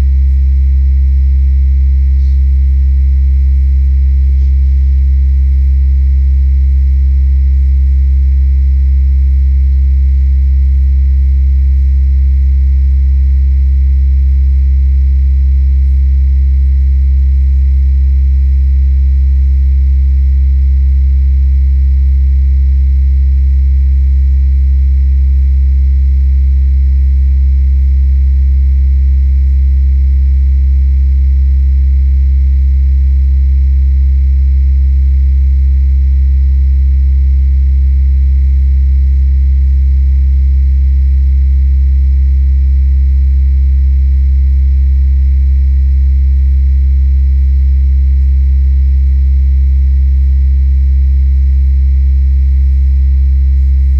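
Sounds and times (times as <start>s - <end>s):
low electrical hum: 4.3s - 4.6s.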